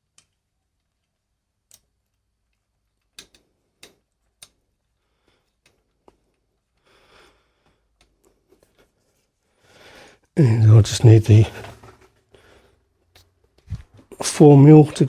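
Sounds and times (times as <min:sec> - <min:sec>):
small metal parts clicking: 0:01.7 - 0:04.6.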